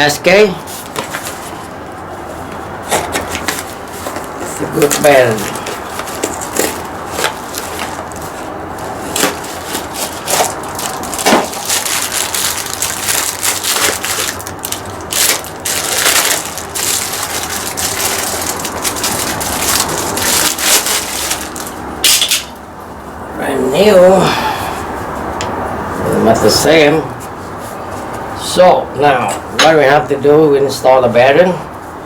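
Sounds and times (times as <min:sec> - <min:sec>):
packaging crackling and tearing: 0:02.9 - 0:21.9.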